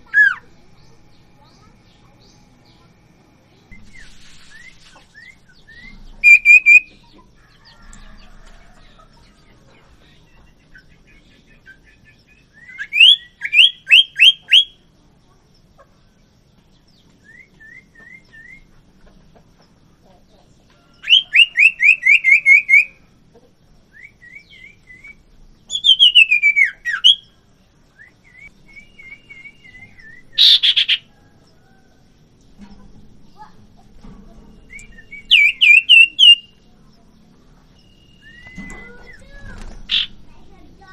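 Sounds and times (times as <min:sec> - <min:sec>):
bird whistled calls: 0:03.7 - 0:07.1, 0:11.6 - 0:14.8, 0:17.2 - 0:18.7, 0:21.0 - 0:23.0, 0:23.9 - 0:27.3, 0:28.0 - 0:31.2, 0:34.7 - 0:36.6, 0:37.8 - 0:40.1.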